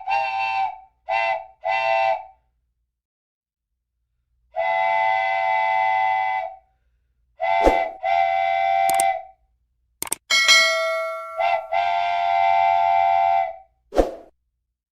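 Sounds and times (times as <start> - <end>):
whistle-like horn blasts: 7.4 - 9.3, 11.2 - 13.7
ringing bell-like strike: 10.3 - 11.7.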